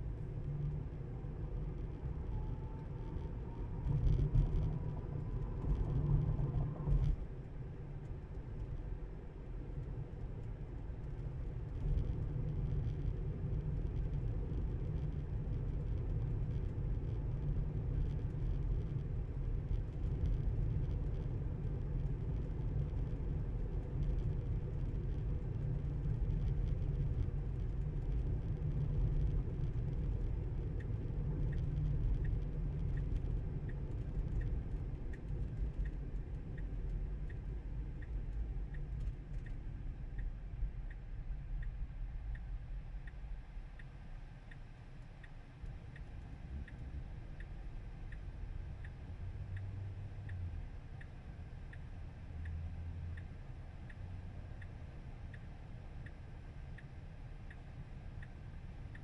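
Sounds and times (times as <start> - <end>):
road and tyre rumble: 0.0 - 59.0
turn signal ticking: 23.2 - 59.0.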